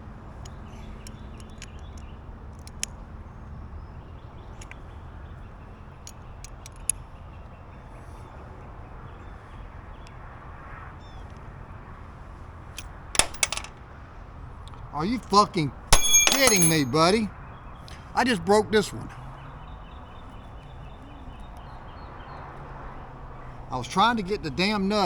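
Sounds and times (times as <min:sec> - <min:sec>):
metallic clicks of hand tools: 0:13.2 - 0:13.7, 0:16.0 - 0:16.9.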